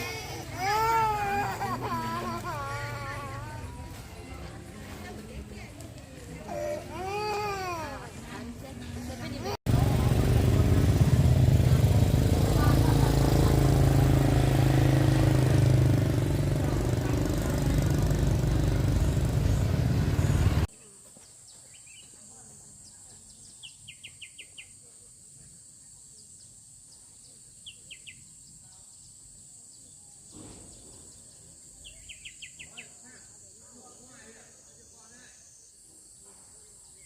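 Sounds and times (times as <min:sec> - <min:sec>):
motor engine humming: 0:08.4 - 0:20.7
bird chirping: 0:22.8 - 0:24.8, 0:26.2 - 0:33.4.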